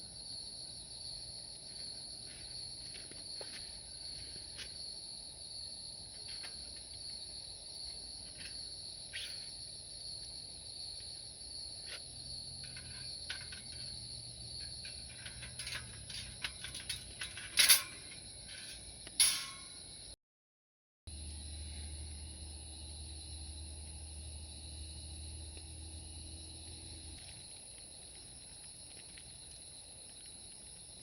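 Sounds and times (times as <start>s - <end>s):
insects chirping: 0.0s - 20.2s, 21.1s - 31.0s
handling clicks and knocks: 12.6s - 19.8s.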